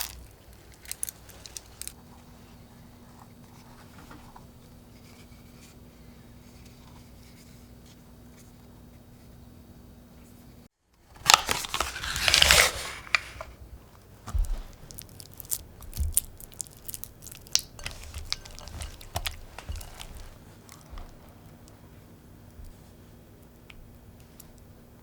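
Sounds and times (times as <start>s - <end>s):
rough rustling: 14.3s - 21.7s.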